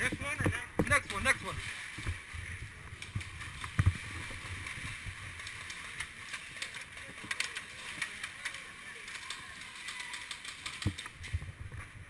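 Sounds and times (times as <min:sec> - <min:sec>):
faint clicks: 0:05.4 - 0:11.4.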